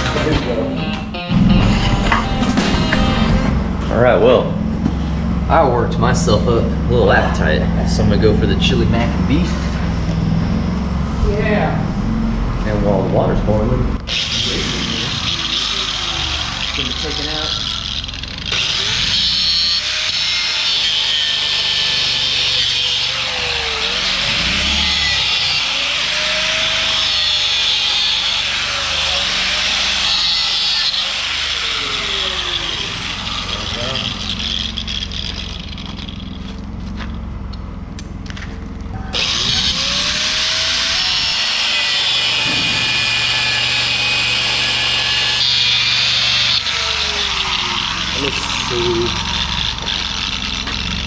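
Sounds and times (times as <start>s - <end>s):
power tool cutting: 0.0s - 36.7s, 39.0s - 51.0s
electric jackhammer chiselling concrete: 14.0s - 36.6s, 39.1s - 51.0s.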